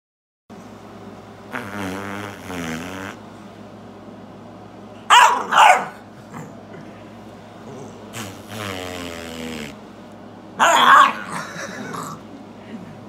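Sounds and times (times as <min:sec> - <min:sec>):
dog barking: 0:05.1 - 0:06.1, 0:10.6 - 0:11.5.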